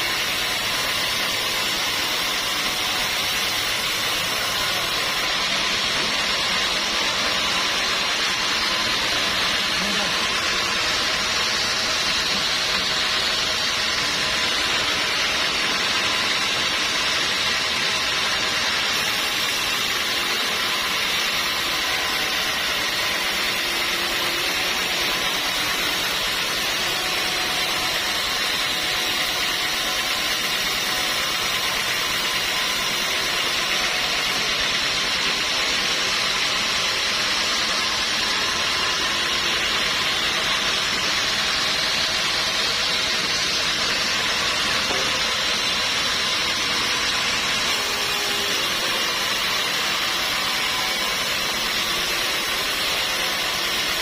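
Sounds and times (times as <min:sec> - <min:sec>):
sawmill machinery hissing: 0:00.0 - 0:54.0.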